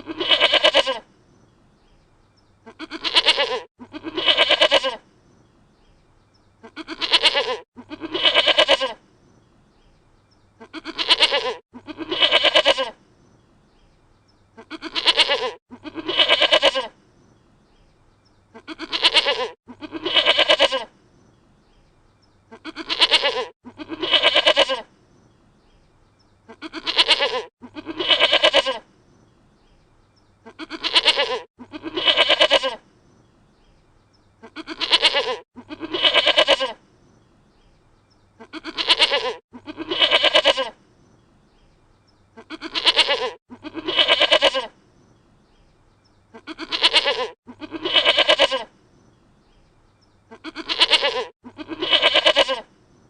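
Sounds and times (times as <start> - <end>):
goat bleating: 0.0 - 1.1, 2.6 - 5.0, 6.6 - 9.0, 10.6 - 13.0, 14.6 - 17.0, 18.5 - 21.0, 22.5 - 24.9, 26.5 - 28.9, 30.4 - 32.8, 34.4 - 36.8, 38.4 - 40.8, 42.4 - 44.8, 46.3 - 48.7, 50.3 - 52.7.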